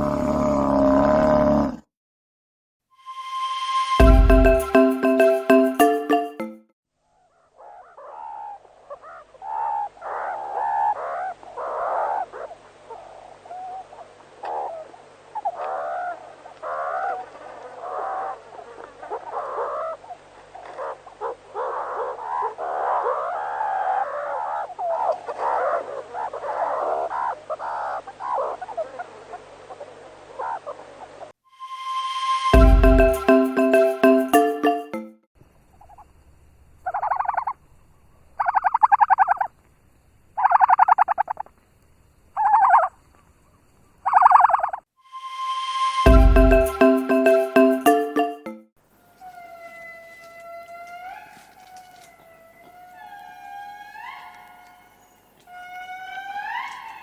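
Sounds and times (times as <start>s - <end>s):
short wavering animal calls: 49.1s - 57.0s.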